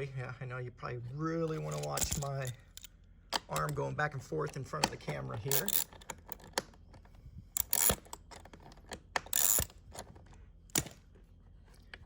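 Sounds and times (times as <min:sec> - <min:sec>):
ratchet wrench clicking: 0:05.5 - 0:06.1, 0:07.6 - 0:08.2, 0:09.3 - 0:09.8.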